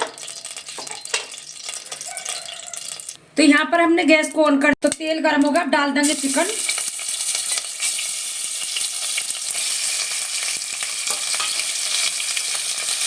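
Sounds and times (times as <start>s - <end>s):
chicken sizzling in oil: 0.0s - 3.2s, 6.0s - 13.0s.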